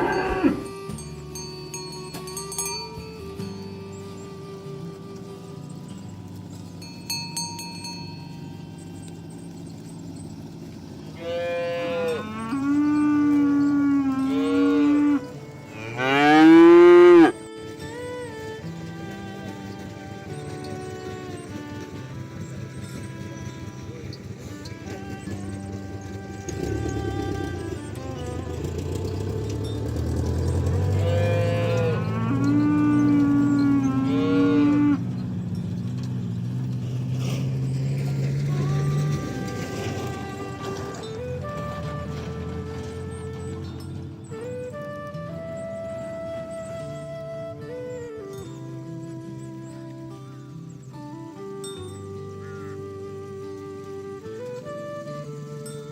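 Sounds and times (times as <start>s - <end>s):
cattle mooing: 0.0s - 0.9s, 10.8s - 17.5s, 30.3s - 35.2s
ox mooing: 0.0s - 1.5s, 3.4s - 18.6s, 19.2s - 43.9s.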